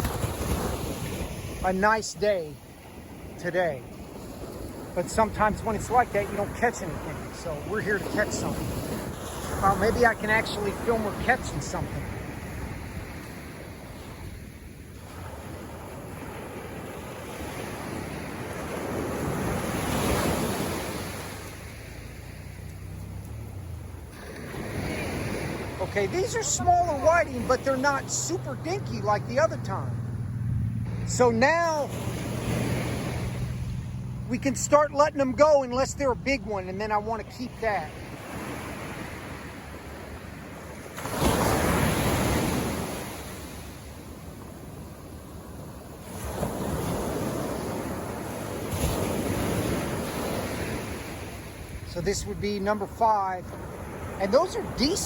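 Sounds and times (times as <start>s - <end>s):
ocean surf on beach: 0.0s - 55.0s
steady wash of water: 0.0s - 55.0s.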